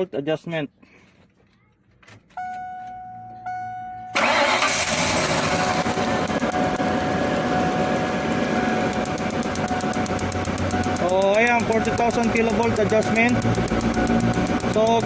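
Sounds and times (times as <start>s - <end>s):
pitched chime: 2.4s - 4.2s
engine starting and running: 4.1s - 15.0s
fast even ticking of spark: 8.8s - 15.0s.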